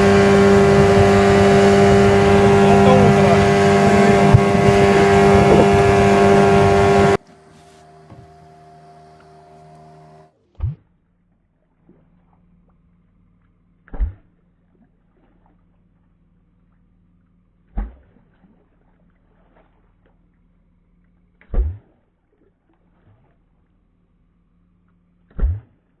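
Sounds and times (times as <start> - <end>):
dull low thumps: 0.0 - 7.2.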